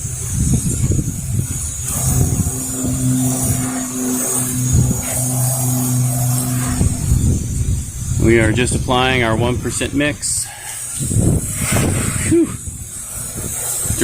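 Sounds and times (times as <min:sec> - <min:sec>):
steady motor hum: 0:00.0 - 0:14.0
wind buffeting microphone: 0:00.0 - 0:14.0
pressure washer spray hiss: 0:09.7 - 0:14.0.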